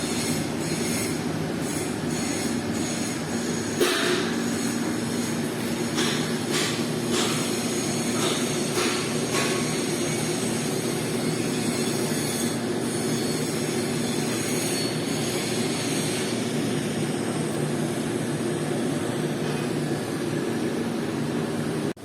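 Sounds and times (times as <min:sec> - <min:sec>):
welding hiss: 0:00.0 - 0:16.4.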